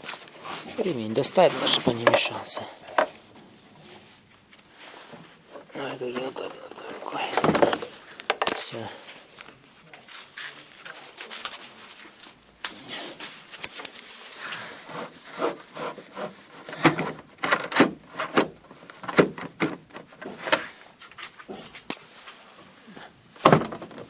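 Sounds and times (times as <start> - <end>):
hands rubbing and scraping seat: 0.0 - 6.6.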